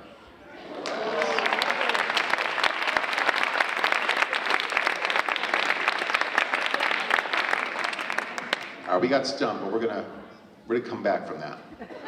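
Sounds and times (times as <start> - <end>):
children applauding: 0.6 - 8.9.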